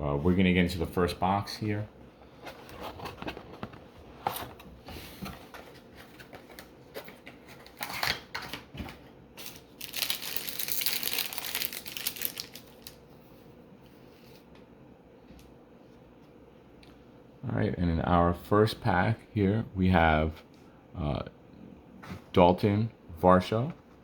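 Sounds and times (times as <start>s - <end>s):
wrapper crinkling and tearing: 9.4s - 13.0s.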